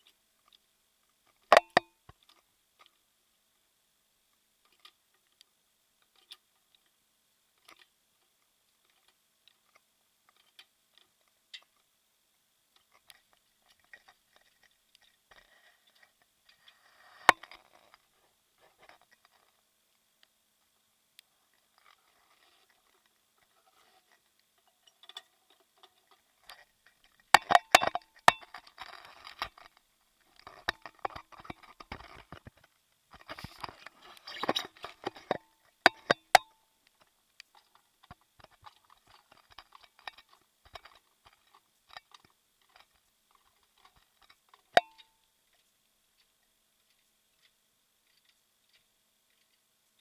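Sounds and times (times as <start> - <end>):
crackly rattling: 12.7 - 50.0.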